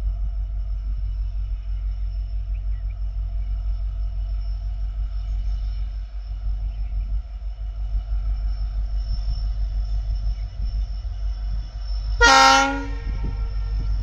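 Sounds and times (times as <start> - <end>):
diesel locomotive rumble: 0.0 - 14.0
locomotive horn blast: 12.2 - 13.5.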